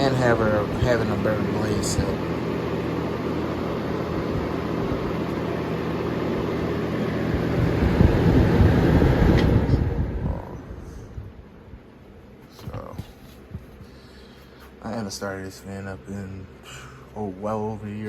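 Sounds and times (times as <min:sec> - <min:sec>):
electric fan running: 0:00.0 - 0:18.0
low rumble: 0:06.7 - 0:11.9
fan switch click: 0:09.2 - 0:10.2.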